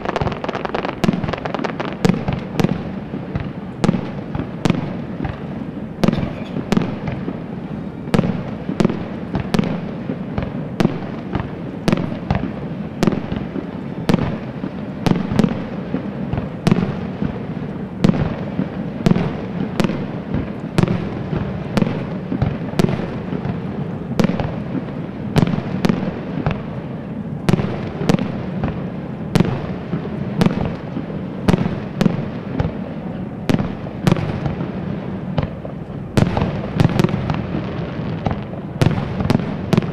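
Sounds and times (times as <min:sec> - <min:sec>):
firework shells bursting: 0:00.0 - 0:07.4
fireworks crackle and rumble: 0:00.0 - 0:39.9.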